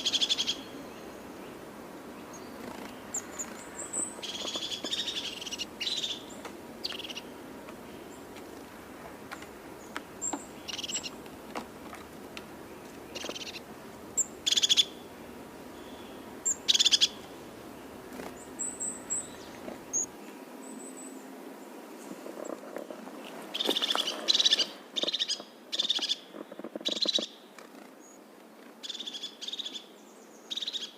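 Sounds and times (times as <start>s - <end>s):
harsh buzzy bird calls: 0.0s - 20.1s, 23.5s - 30.9s
high bird chirps: 2.3s - 7.3s, 9.8s - 11.1s, 12.8s - 15.0s, 15.7s - 17.3s.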